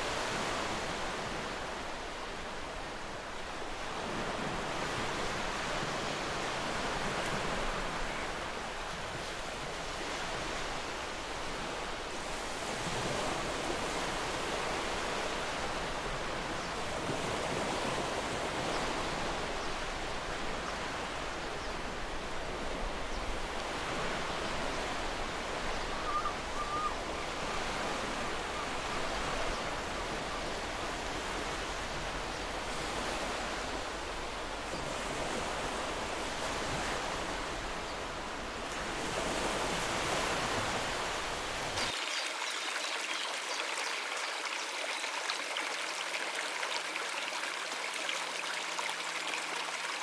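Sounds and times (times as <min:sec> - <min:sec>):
waterfall rushing: 0:41.8 - 0:50.0.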